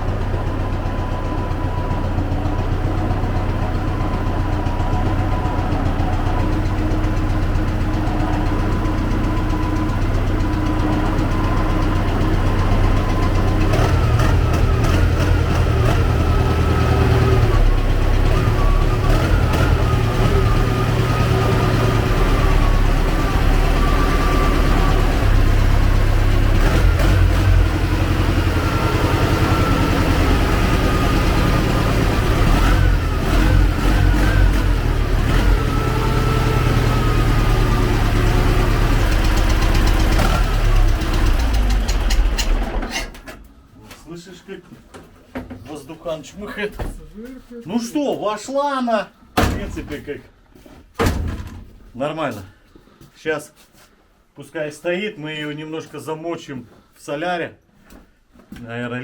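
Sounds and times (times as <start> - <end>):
tractor diesel engine running: 0.0 - 43.8.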